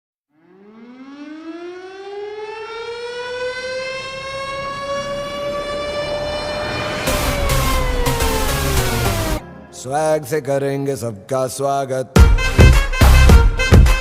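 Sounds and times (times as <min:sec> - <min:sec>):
air-raid siren winding up: 0:00.4 - 0:09.4.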